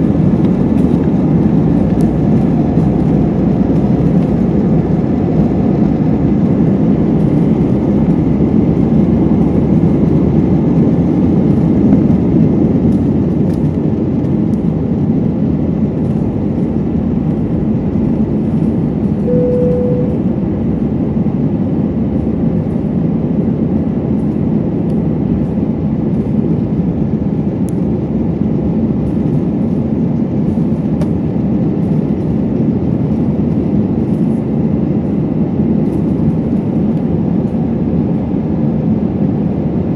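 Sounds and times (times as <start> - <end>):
jet engine cabin roar: 0.0 - 39.9
short single tone: 19.2 - 20.3.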